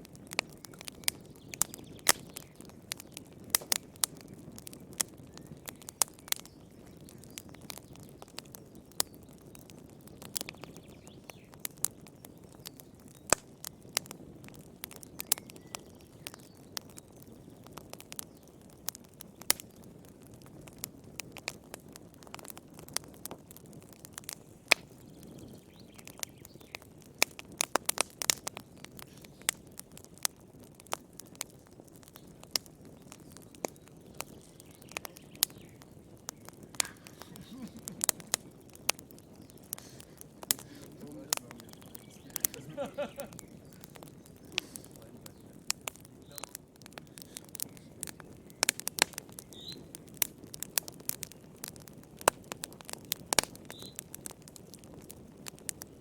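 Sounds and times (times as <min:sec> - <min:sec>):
soft rush of burning: 0:00.0 - 0:56.0
wood fire crackling: 0:00.0 - 0:56.0.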